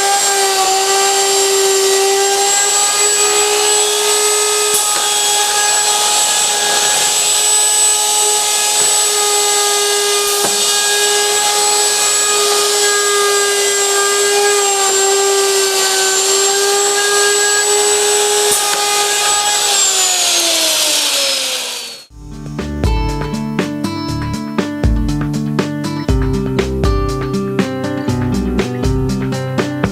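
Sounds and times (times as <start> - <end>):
router motor whining: 0.0 - 22.1.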